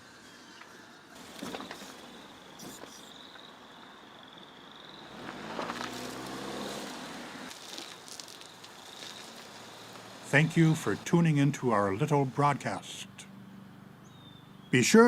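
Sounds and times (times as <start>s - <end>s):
car passing by: 5.0s - 11.0s.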